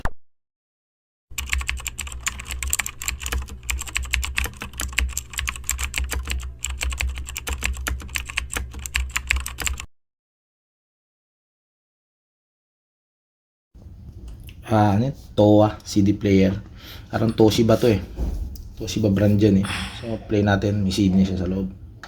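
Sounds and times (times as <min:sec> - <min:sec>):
rapid irregular clicking: 0:01.4 - 0:09.9
steady low hum: 0:13.8 - 0:22.0.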